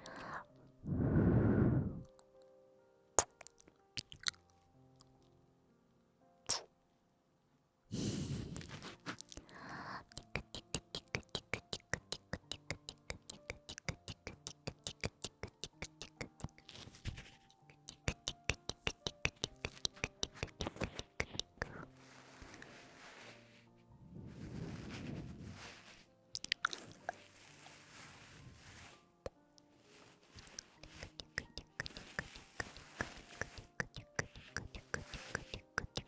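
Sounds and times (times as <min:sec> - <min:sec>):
soft background music: 0:00.0 - 0:36.0
rapid clicking close to microphone: 0:17.8 - 0:21.7
short rustle: 0:21.9 - 0:26.2, 0:27.0 - 0:29.2.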